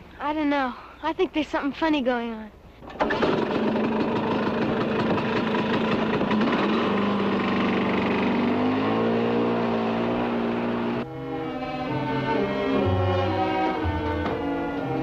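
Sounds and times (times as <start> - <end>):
vehicle engine revving: 3.0 - 11.1.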